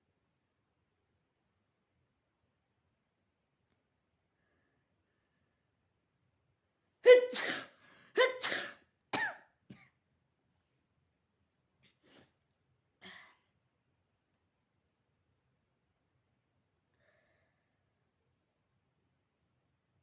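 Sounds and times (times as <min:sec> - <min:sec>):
person sneezing: 0:07.0 - 0:09.5.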